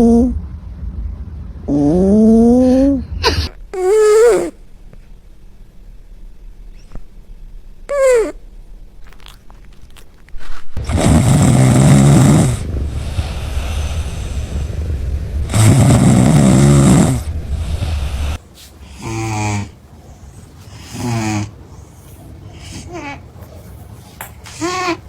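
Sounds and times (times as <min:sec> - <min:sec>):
cat snoring: 0:10.8 - 0:14.7, 0:15.4 - 0:23.1
soft breathing: 0:17.1 - 0:25.0.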